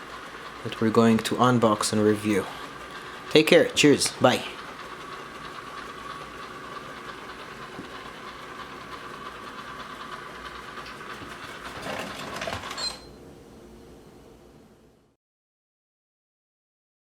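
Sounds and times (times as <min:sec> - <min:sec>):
vacuum rattles: 0:00.0 - 0:12.8
robot vacuum motor whine: 0:00.0 - 0:13.1.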